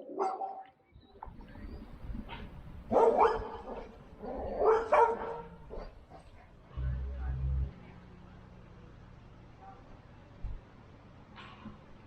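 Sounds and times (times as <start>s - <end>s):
faint low rumble: 1.2s - 11.2s
animal barking calls: 2.3s - 6.7s.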